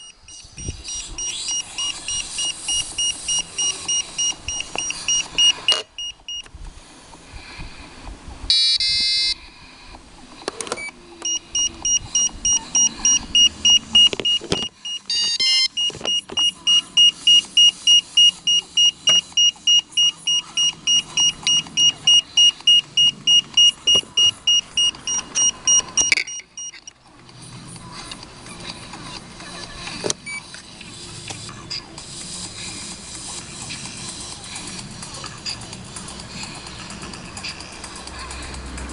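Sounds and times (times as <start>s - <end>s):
radio transmitter beeping: 0.0s - 6.5s, 8.5s - 9.4s, 10.6s - 27.0s.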